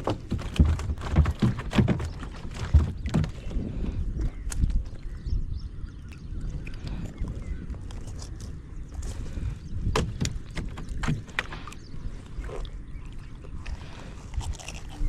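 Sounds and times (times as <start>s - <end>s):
water sloshing: 0.0s - 4.0s.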